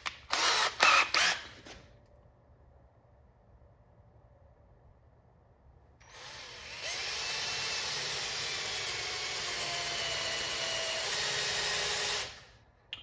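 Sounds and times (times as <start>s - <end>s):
electric drill boring into wood: 0.3s - 1.4s, 6.0s - 12.5s.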